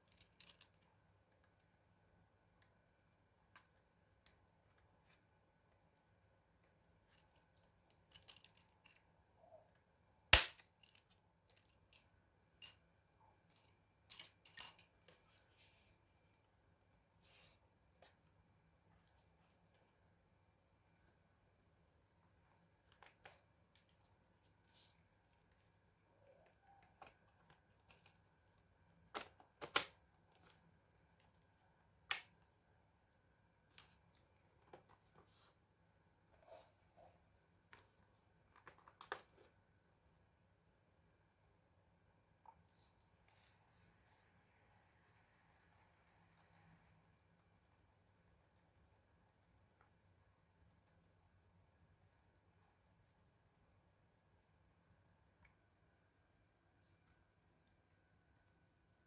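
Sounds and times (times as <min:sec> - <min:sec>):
sharp loud snap: 0:10.4 - 0:10.6.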